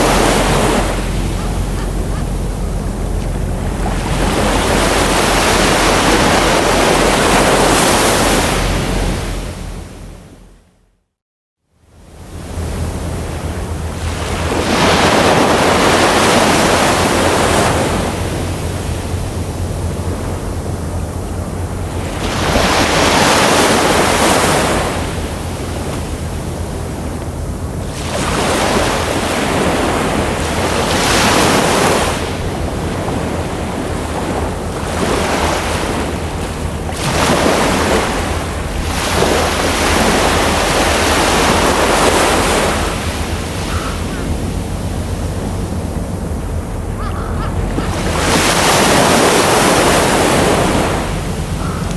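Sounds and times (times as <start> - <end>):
ocean waves breaking: 0.0 - 10.7, 11.9 - 51.9
low rumble: 32.2 - 51.9.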